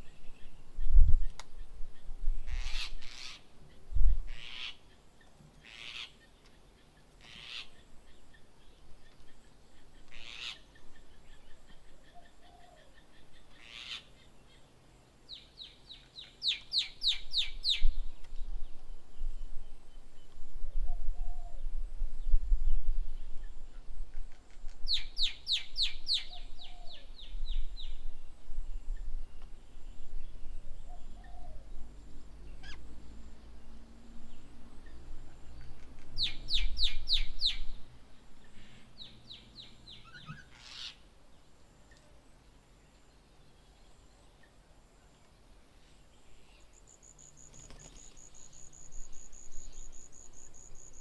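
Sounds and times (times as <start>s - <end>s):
sharp bird calls: 5.6s - 8.0s, 9.2s - 14.7s, 38.4s - 41.1s.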